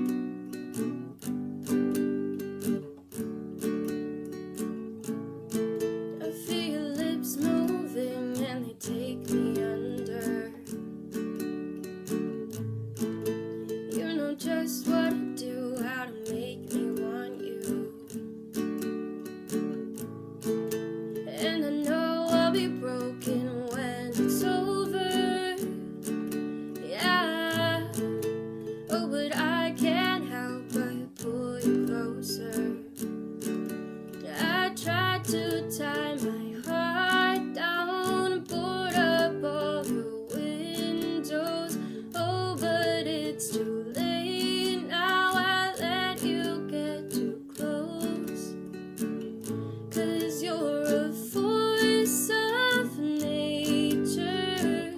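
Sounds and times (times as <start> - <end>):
acoustic guitar strummed: 0.0 - 54.9
person singing: 6.2 - 10.8, 13.7 - 18.2, 21.2 - 25.8, 26.8 - 33.0, 34.2 - 48.6, 49.9 - 54.9.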